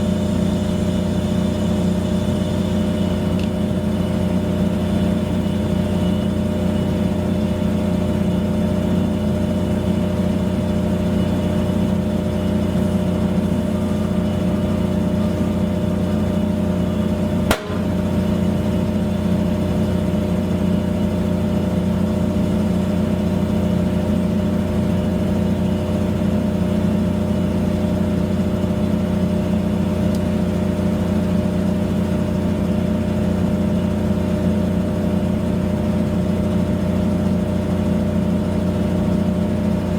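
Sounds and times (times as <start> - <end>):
steady motor hum: 0.0 - 39.9
sharp click: 17.5 - 18.1.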